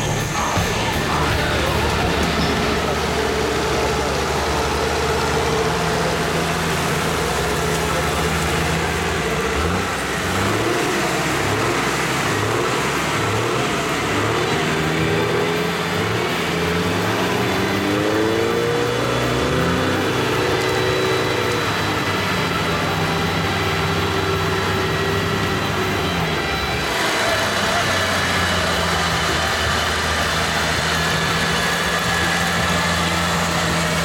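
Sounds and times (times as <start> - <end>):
off-road vehicle engine revving: 0.0 - 34.0.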